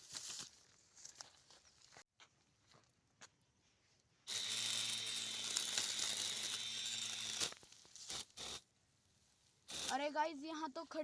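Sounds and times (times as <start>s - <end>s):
lawn mower cutting grass: 4.3s - 8.6s.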